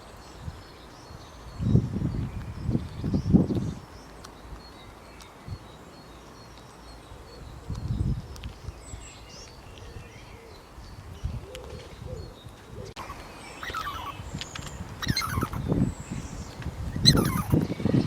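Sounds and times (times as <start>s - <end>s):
high chirping calls: 13.0s - 18.0s.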